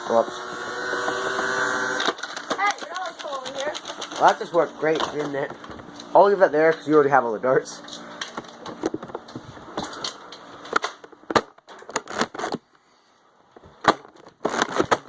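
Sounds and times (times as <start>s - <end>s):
toy blasters clicking and firing: 2.0s - 5.2s.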